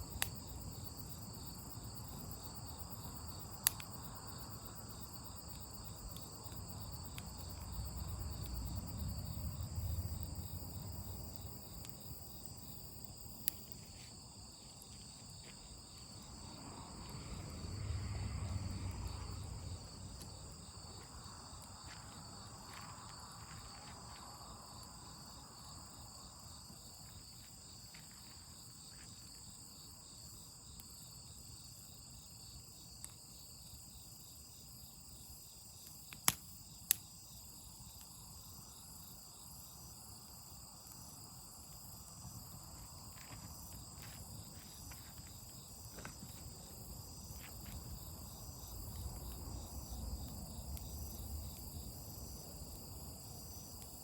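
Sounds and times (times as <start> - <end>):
crickets and insects chirping: 0.0 - 54.0
low rumble: 16.6 - 20.2.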